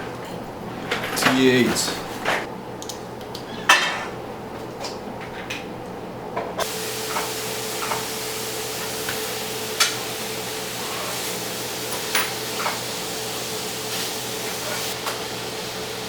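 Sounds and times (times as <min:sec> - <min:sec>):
steady hiss: 0:06.6 - 0:16.0.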